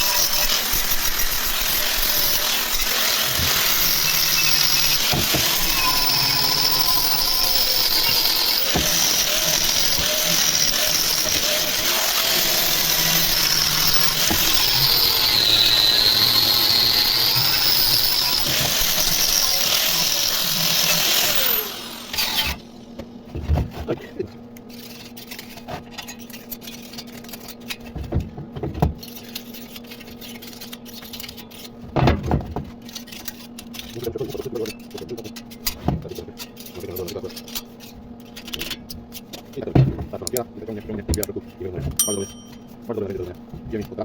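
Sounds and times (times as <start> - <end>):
power tool whining: 0.0 - 23.0.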